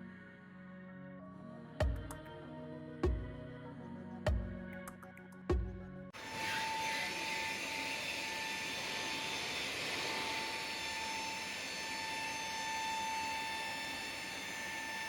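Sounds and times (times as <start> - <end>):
high machine whine: 6.2 - 15.0.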